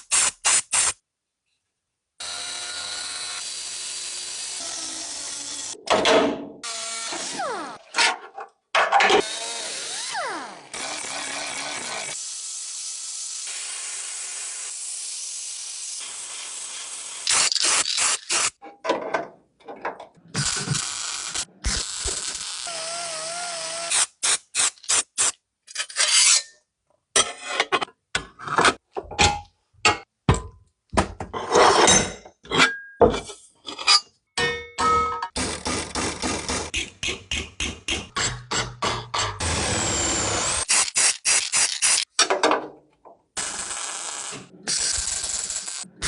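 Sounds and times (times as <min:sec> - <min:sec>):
short abrupt bursts clicks and scrapes: 0:40.6 - 0:42.2
hissing tool: 0:43.4 - 0:45.9.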